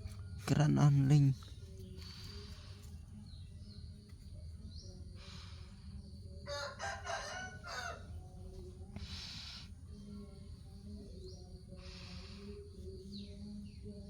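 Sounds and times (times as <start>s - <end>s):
rooster crowing: 6.5s - 8.1s.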